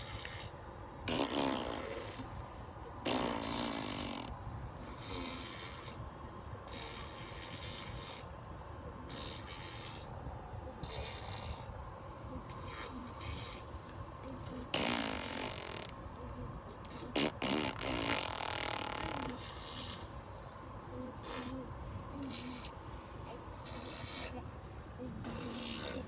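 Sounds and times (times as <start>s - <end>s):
baby blowing raspberries: 0.0s - 6.0s, 14.5s - 16.0s, 16.8s - 20.2s, 21.2s - 24.5s, 25.1s - 26.0s.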